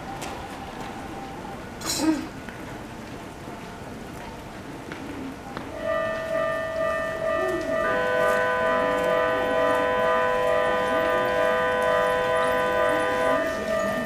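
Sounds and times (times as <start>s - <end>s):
level crossing warning bells: 5.7s - 14.0s
second electronic alarm: 5.8s - 14.0s.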